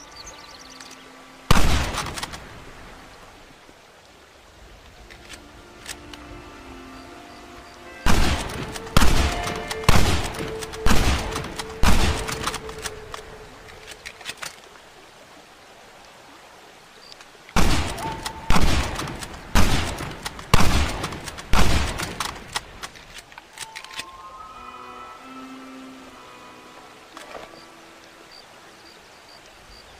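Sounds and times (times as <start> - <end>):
rifle shots echoing: 1.5 - 2.4, 8.1 - 13.0, 17.6 - 22.3.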